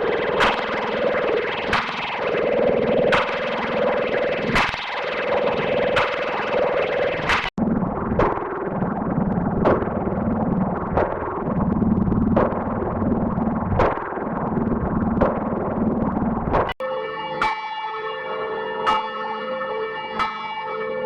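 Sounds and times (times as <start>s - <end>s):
steady low drone: 0.0s - 16.7s
church bell struck: 16.8s - 21.0s.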